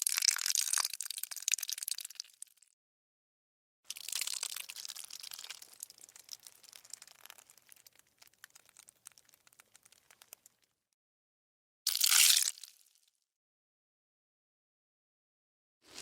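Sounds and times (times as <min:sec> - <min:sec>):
squelchy blood gush: 0:03.9 - 0:10.4.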